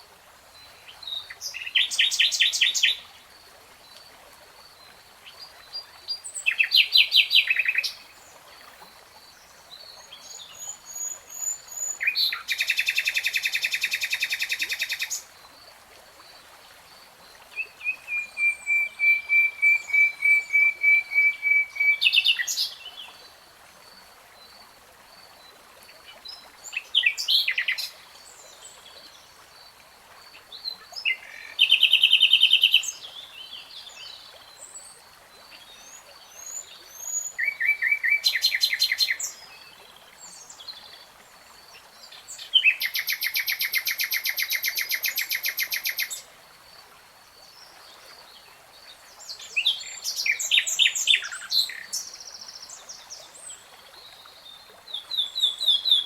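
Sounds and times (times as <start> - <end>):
nightingale singing: 17.8 - 22.6.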